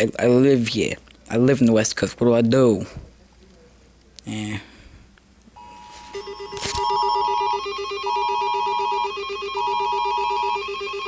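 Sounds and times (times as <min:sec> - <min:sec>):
pulsing low beep: 0:05.6 - 0:11.0
two-pitch alarm tone: 0:05.6 - 0:11.0.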